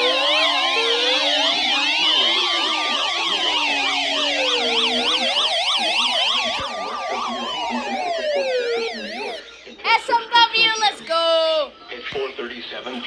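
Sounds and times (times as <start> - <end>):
siren wails: 0.0 - 9.8
siren yelps: 0.0 - 9.8.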